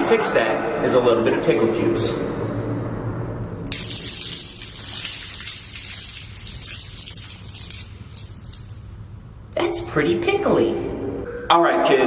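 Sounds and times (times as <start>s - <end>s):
liquid pouring and splattering: 3.6s - 9.6s.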